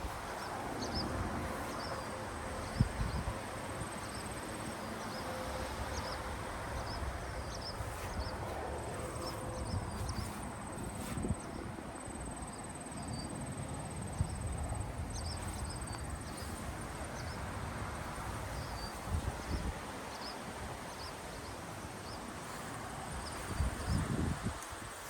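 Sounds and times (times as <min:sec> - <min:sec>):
wind buffeting microphone: 0:02.6 - 0:03.9, 0:06.9 - 0:12.1, 0:14.1 - 0:21.3, 0:22.0 - 0:25.0.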